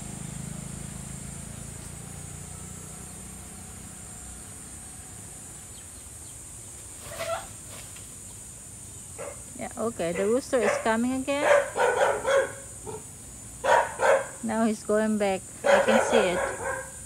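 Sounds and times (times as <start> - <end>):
passing vehicle engine hum: 0.0 - 6.5, 10.1 - 17.0
high insect drone: 0.0 - 17.0
dog barking: 9.2 - 9.5, 10.1 - 14.4, 15.6 - 17.0.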